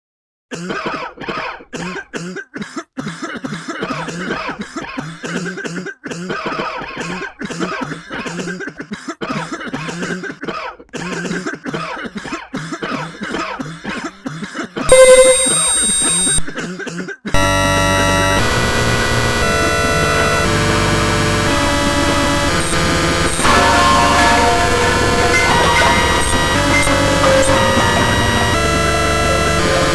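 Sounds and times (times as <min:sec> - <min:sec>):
person coughing: 0:00.5 - 0:14.9, 0:16.4 - 0:17.3
distorted overlapping tones: 0:14.9 - 0:16.4, 0:17.4 - 0:29.9
loud steady tone: 0:14.9 - 0:16.5, 0:17.4 - 0:29.9.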